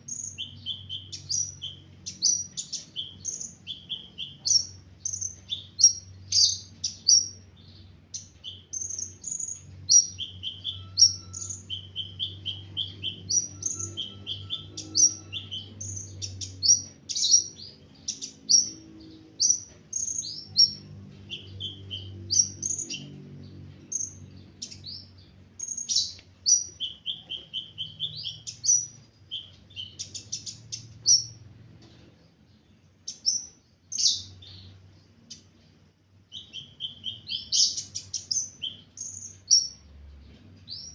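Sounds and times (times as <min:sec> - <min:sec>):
bird chirping and trilling: 0:00.0 - 0:31.5, 0:33.1 - 0:35.5, 0:36.3 - 0:39.9, 0:40.7 - 0:40.9
faint low hum: 0:00.0 - 0:40.9.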